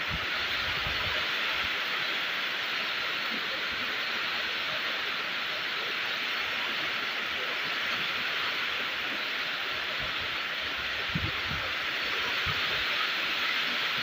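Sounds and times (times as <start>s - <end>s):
steady rain falling: 0.0s - 14.0s.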